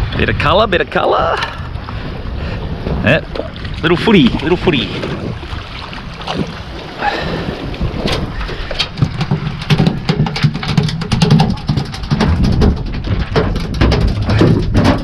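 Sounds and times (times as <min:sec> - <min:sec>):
boat rumble: 0:00.0 - 0:15.0
low rumble of wind: 0:00.0 - 0:15.0
sharp knocks and clicks: 0:08.0 - 0:15.0.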